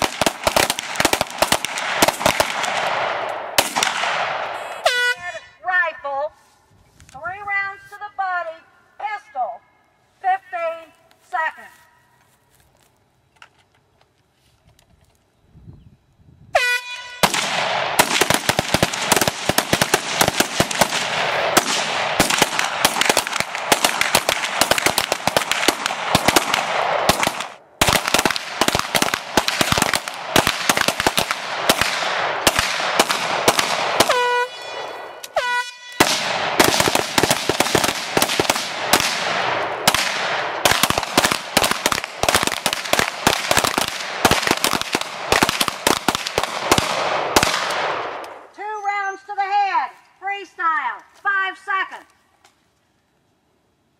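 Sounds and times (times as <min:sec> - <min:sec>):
rapid gunfire: 0:00.0 - 0:04.4, 0:17.2 - 0:34.2, 0:36.0 - 0:48.0.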